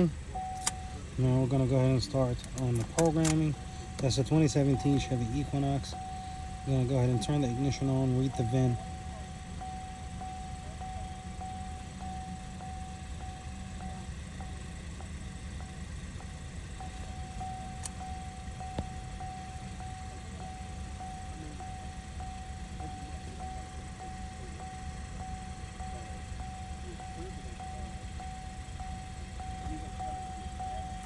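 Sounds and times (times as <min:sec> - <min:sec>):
low hum: 0:00.0 - 0:31.0
electronic chime ringing: 0:16.9 - 0:31.0.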